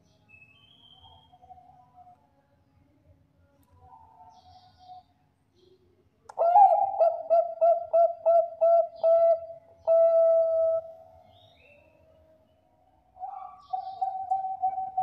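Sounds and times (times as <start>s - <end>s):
dove cooing: 6.4s - 11.1s, 13.2s - 15.0s.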